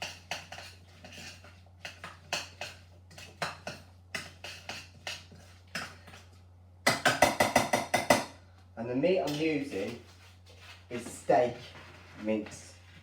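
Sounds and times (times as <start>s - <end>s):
utensil scraping and clinking in pan: 0.0s - 6.3s.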